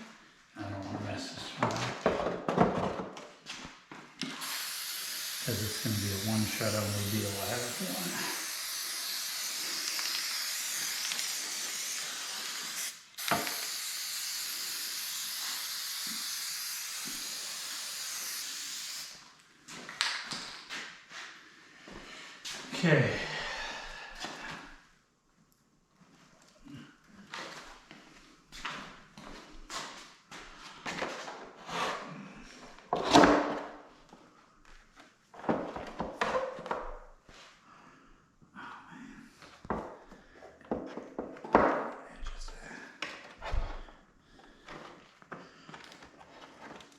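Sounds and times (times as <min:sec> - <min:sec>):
spray adhesive hissing: 0:04.3 - 0:19.2
spray can click: 0:09.8 - 0:11.4, 0:13.2 - 0:13.7.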